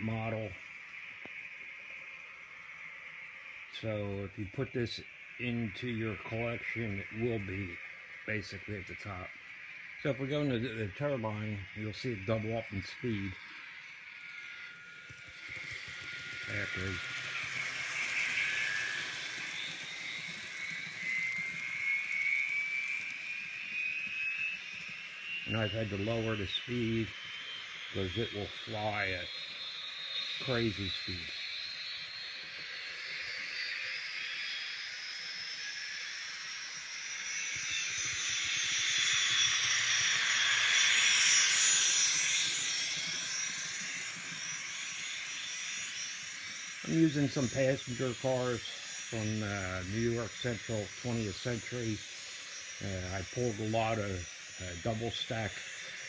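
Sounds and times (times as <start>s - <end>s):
model turbine whine from speaker: 0.0s - 56.0s
steady hiss: 0.0s - 56.0s.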